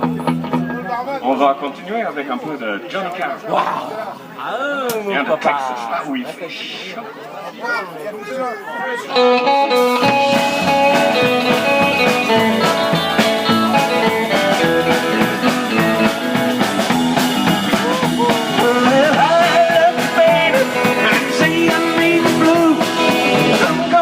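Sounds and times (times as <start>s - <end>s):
bass: 0.0s - 0.9s, 9.5s - 24.0s
electric guitar lines: 9.1s - 24.0s
steady drum beat: 9.7s - 24.0s.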